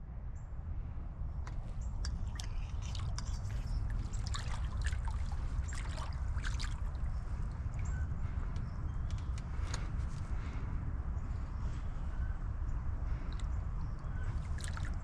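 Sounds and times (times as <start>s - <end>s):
water dripping and trickling: 2.0s - 7.6s, 14.3s - 15.0s.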